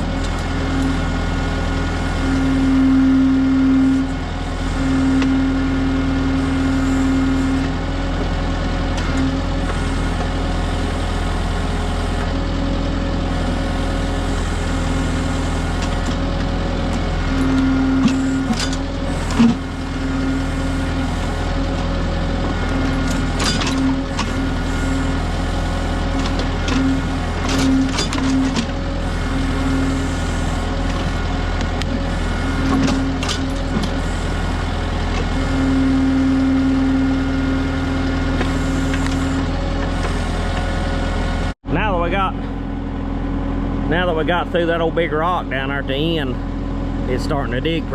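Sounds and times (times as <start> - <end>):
hydraulic tone: 0.0 - 41.6
tractor diesel engine running: 0.0 - 47.9
backhoe bucket clunk: 14.7 - 35.4.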